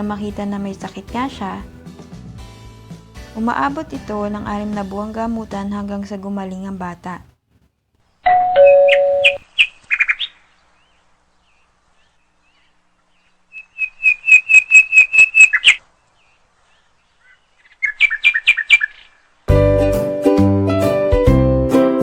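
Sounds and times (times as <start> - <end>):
whistled bird-like chirps: 13.5 - 15.8.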